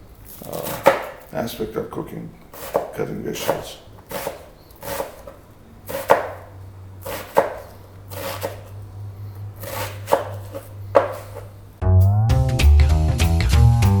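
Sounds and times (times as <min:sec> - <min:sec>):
knife chopping on cutting board: 0:00.4 - 0:01.3, 0:02.5 - 0:08.8, 0:09.6 - 0:11.5.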